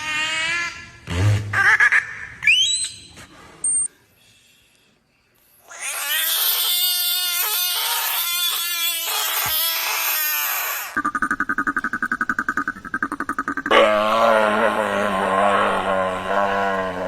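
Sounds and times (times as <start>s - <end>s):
loud long animal cry: 5.7s - 11.0s, 13.7s - 17.0s.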